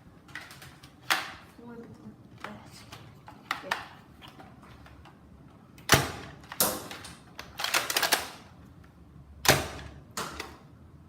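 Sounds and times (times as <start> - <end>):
plastic toy blaster clacks: 6.4 - 8.4.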